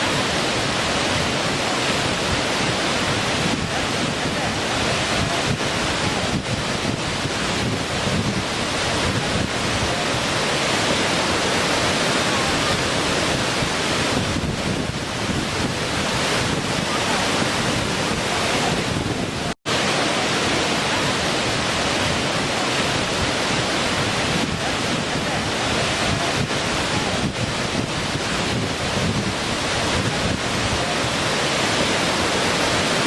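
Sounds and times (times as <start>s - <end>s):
rush of falling water: 0.0s - 33.0s.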